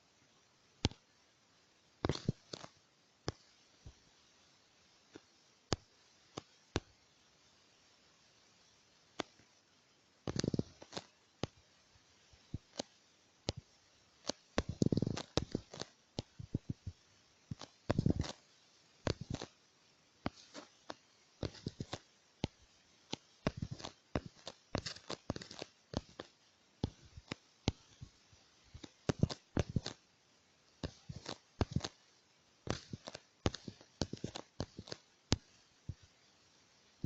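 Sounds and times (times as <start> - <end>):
fingers tapping a smartphone: 2.0 - 4.0, 9.2 - 9.4, 10.3 - 11.6, 12.4 - 18.4, 19.1 - 19.6, 20.3 - 28.2, 28.8 - 30.0, 30.8 - 36.1.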